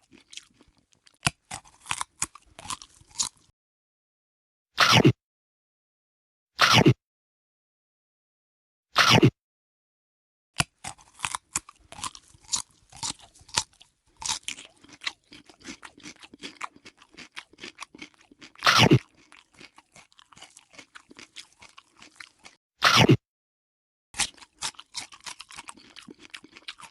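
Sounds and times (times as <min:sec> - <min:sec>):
chewing crunchy food: 0:00.0 - 0:03.5, 0:10.6 - 0:23.2, 0:24.2 - 0:26.9
loud crunching bites: 0:00.0 - 0:03.5, 0:10.6 - 0:23.2, 0:24.2 - 0:26.9.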